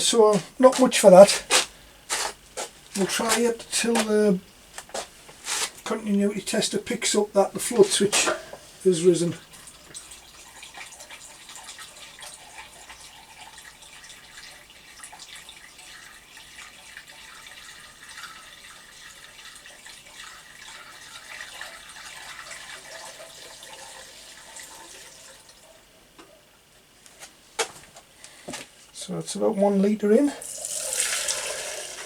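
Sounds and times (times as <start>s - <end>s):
petrol pouring into tank: 7.0s - 25.6s, 30.4s - 32.0s.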